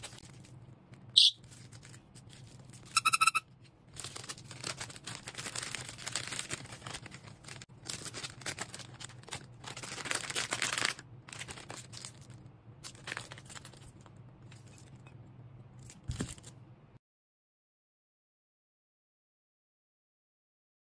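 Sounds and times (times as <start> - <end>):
packaging crinkling: 0.0 - 15.0.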